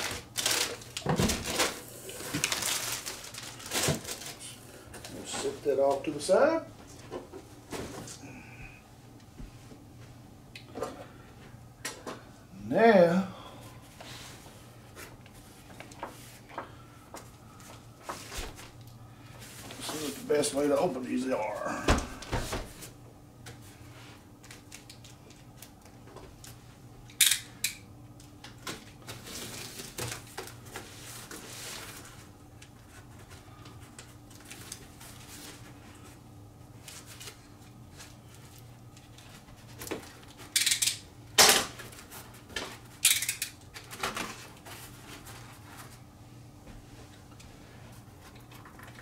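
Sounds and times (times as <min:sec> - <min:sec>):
packaging clicks and rustles: 0:00.0 - 0:05.2
faint steady hum: 0:00.0 - 0:49.0.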